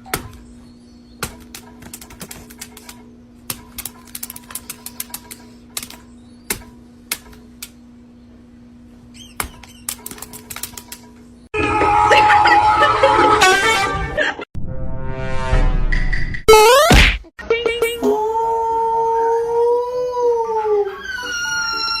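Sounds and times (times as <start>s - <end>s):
steady low hum: 0.0s - 11.5s
high squeak: 21.0s - 22.0s.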